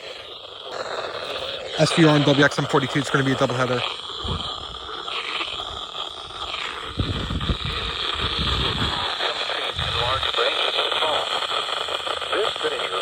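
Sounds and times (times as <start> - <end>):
radio receiver hiss: 0.0 - 13.0
low rumbling: 4.1 - 4.9, 5.6 - 10.4.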